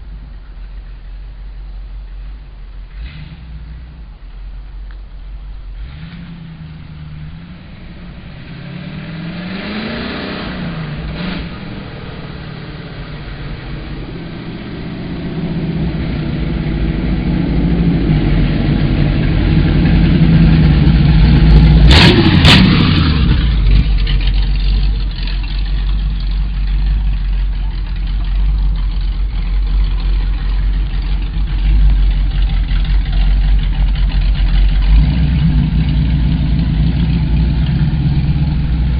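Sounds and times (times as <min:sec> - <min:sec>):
car engine running and revving: 0:00.0 - 0:38.9.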